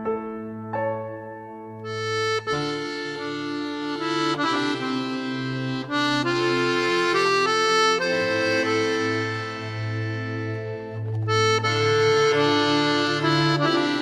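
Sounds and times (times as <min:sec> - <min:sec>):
reedy chords: 0:01.7 - 0:14.0
low drone: 0:07.0 - 0:13.8.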